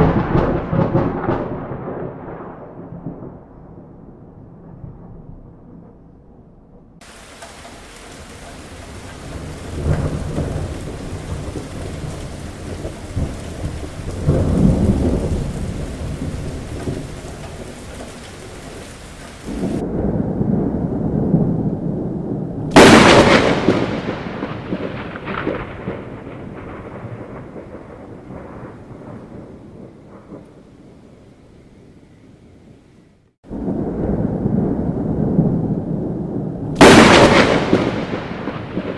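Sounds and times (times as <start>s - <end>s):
sharp thunderclap: 0.0s - 3.9s, 7.0s - 30.6s, 33.5s - 38.9s
rolling thunder: 0.0s - 31.9s, 33.4s - 38.9s
heavy rain: 7.0s - 31.8s, 33.5s - 38.9s.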